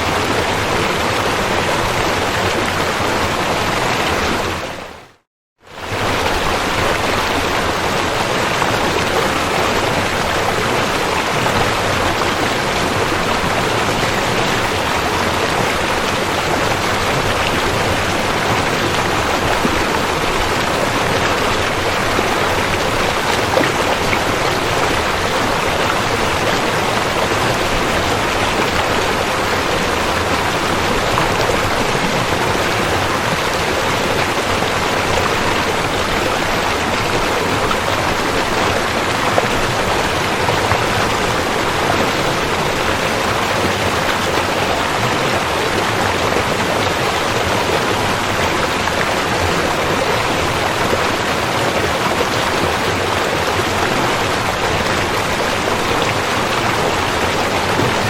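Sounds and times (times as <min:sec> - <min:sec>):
stream flowing: 0:00.0 - 0:58.0.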